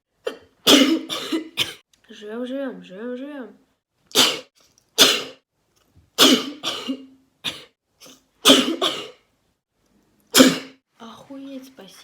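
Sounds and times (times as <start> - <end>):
woman coughing: 0.2 - 1.8, 4.2 - 5.4, 6.2 - 7.8, 8.4 - 9.2, 10.4 - 10.8
woman sneezing: 10.3 - 10.8.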